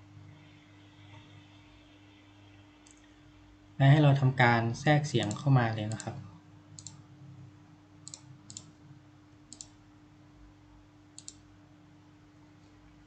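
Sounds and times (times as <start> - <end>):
faint steady hum: 0.0 - 13.0
computer mouse clicking: 2.8 - 3.1, 5.2 - 6.2, 6.8 - 7.0, 8.0 - 8.8, 9.5 - 9.8, 11.2 - 11.4.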